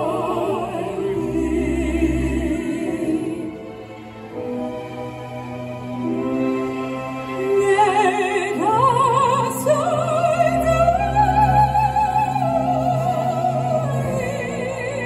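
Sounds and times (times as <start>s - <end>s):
operatic singing voice: 0.0s - 4.1s, 7.4s - 15.0s.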